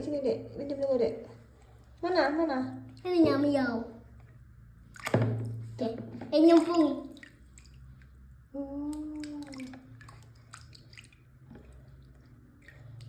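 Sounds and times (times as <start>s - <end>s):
soapy water splashing and dripping: 4.8s - 13.0s.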